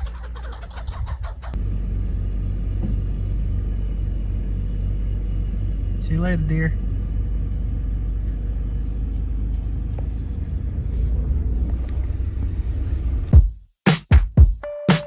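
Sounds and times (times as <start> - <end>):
car driving rumble: 0.0 - 13.3
music: 13.4 - 15.0.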